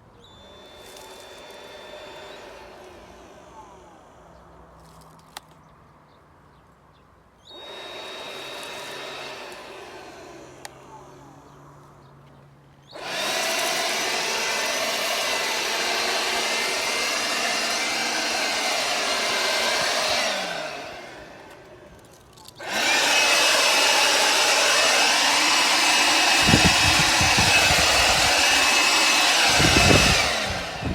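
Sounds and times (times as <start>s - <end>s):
cordless blower whining: 0.0s - 5.4s, 7.4s - 30.9s.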